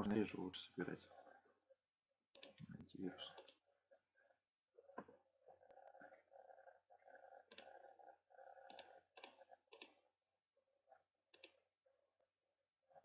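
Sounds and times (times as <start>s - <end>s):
computer mouse clicks: 2.3s - 3.6s, 7.4s - 7.9s, 8.6s - 10.1s, 11.3s - 11.6s.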